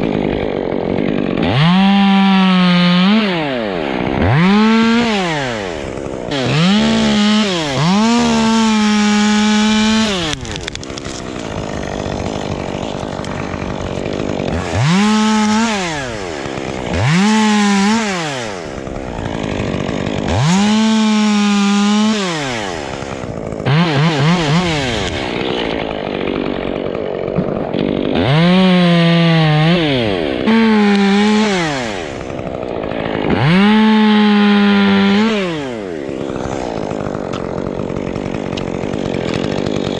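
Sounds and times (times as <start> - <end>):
chainsaw revving: 0.0 - 39.9.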